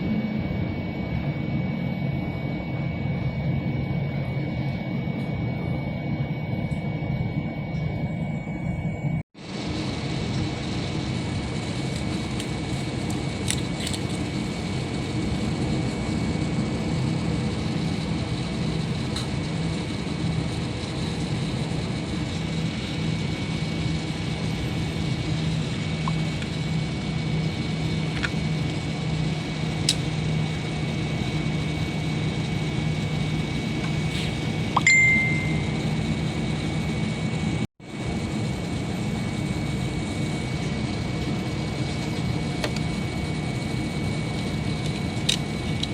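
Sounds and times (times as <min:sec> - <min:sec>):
airliner cabin engine rumble: 0:00.0 - 0:45.9
short high ding: 0:34.8 - 0:35.8.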